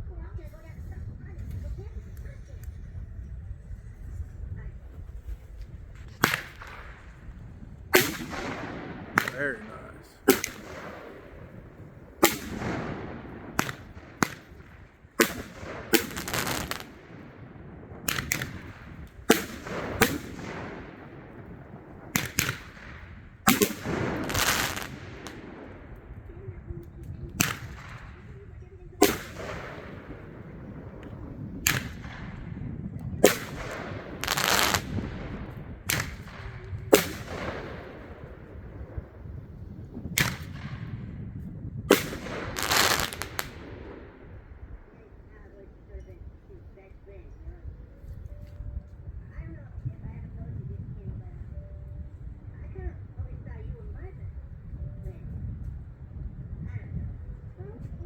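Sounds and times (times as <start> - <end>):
fireworks bangs: 5.4 - 46.3
fireworks crackling hiss: 6.2 - 17.2, 17.9 - 25.6, 33.2 - 35.2, 41.9 - 44.0.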